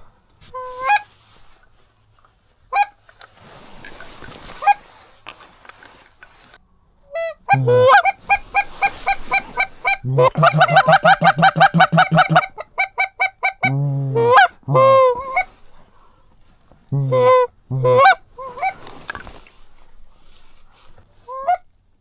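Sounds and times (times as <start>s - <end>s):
goose honking and clucking: 7.1s - 15.6s, 16.9s - 18.8s, 21.3s - 21.6s.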